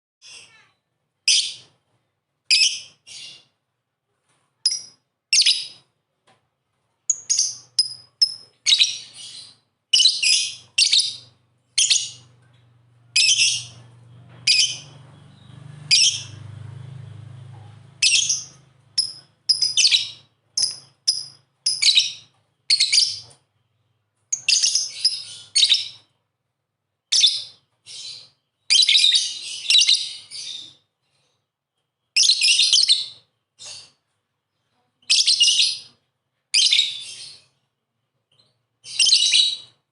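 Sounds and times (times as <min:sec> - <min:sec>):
lovebirds chirping: 0:04.6 - 0:05.9, 0:07.0 - 0:16.6, 0:17.8 - 0:26.2, 0:32.0 - 0:39.9
faint low hum: 0:10.6 - 0:21.0.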